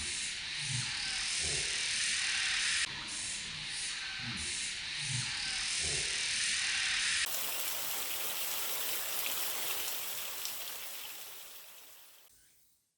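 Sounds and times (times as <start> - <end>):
stream water rushing: 7.3 - 12.3.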